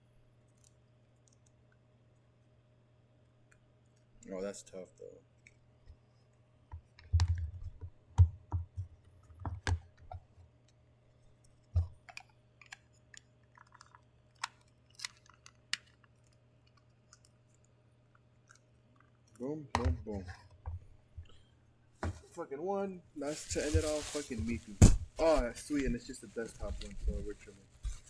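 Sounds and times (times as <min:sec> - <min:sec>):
packaging knocks and clicks: 0:11.8 - 0:17.3
low steady hum: 0:16.0 - 0:28.0.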